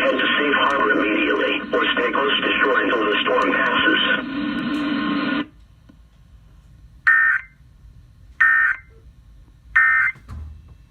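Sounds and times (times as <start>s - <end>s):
broadcast audio: 0.0s - 5.6s.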